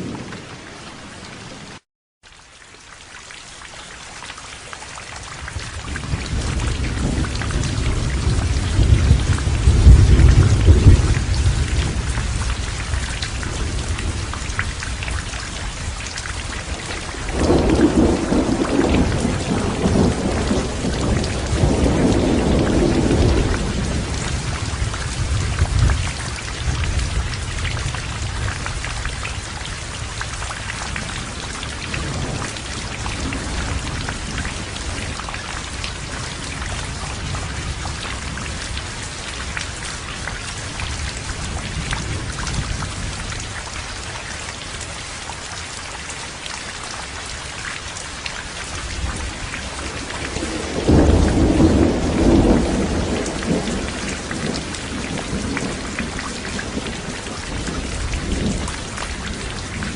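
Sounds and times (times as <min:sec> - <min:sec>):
heavy rain falling: 0:00.0 - 0:59.9
thunder rumbling: 0:05.7 - 0:39.4, 0:48.9 - 0:59.9.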